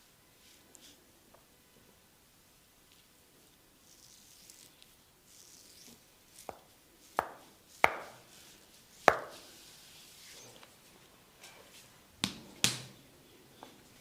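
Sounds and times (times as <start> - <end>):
rubbing of skin: 3.8 - 10.7
percussive massage strikes: 7.2 - 8.2, 9.1 - 9.4, 12.2 - 12.9.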